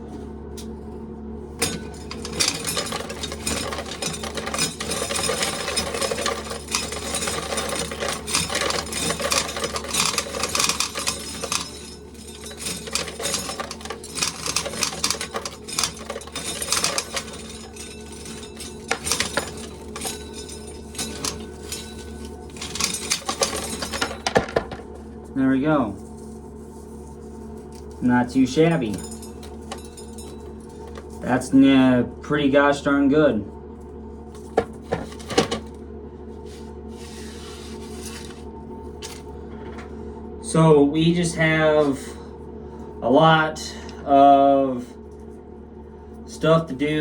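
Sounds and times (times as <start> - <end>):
fan humming: 0.0 - 47.0
corn kernels rattling into tub: 1.8 - 24.8.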